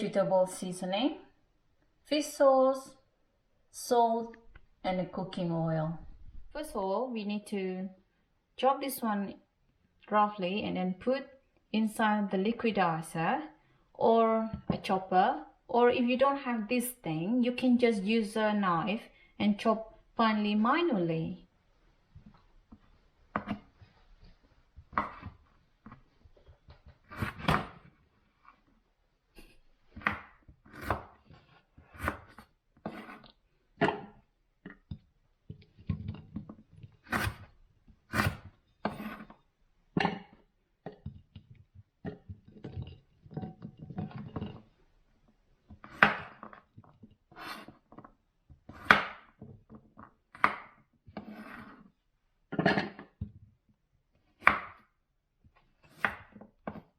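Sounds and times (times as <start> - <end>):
knife chopping on wooden board: 23.3 - 23.6, 29.9 - 34.1, 36.0 - 37.5, 38.1 - 39.3, 45.8 - 46.6, 48.7 - 49.4, 50.3 - 51.8, 54.4 - 54.9, 55.8 - 56.9.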